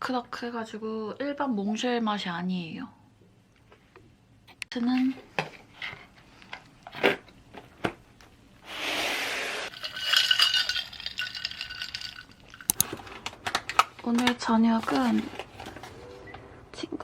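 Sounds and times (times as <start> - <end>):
dishes and utensils clinking: 9.7 - 12.8.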